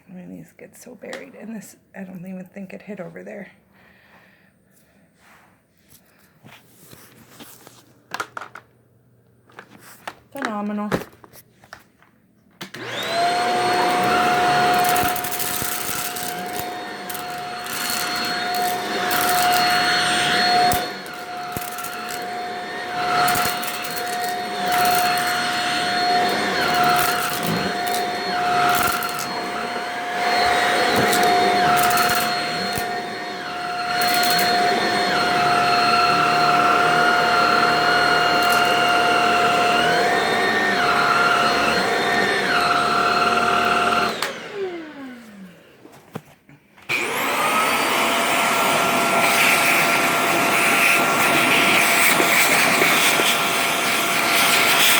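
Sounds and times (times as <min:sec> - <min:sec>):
vacuum cleaner whine: 0:12.6 - 0:46.2, 0:46.8 - 0:54.9
debris rattling being sucked up: 0:13.7 - 0:33.1.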